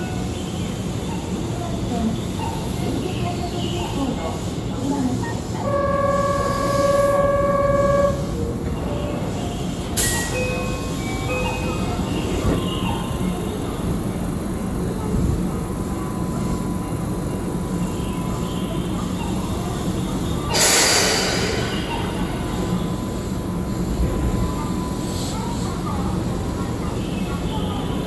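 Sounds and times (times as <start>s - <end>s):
electric train rumbling: 0.0s - 28.0s
short loud hiss: 20.5s - 22.2s.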